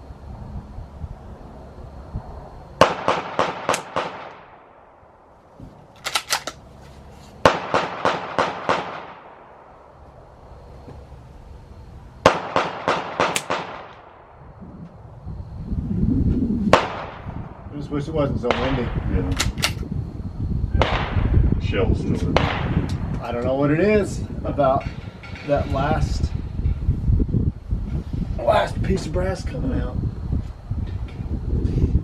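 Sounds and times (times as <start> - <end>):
wind rumble on microphone: 0.0 - 5.8, 13.7 - 32.0
rapid rifle shots: 2.8 - 4.6, 7.4 - 9.4, 12.2 - 14.2.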